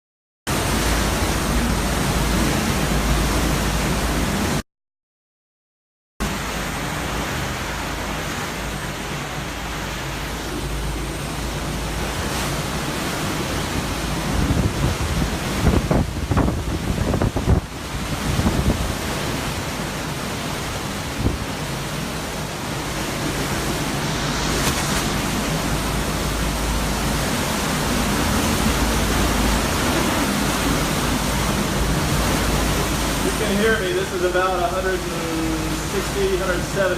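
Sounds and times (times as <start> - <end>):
hurricane wind rushing: 0.5 - 4.6, 6.2 - 36.9
wind buffeting microphone: 13.3 - 19.4, 21.0 - 33.8.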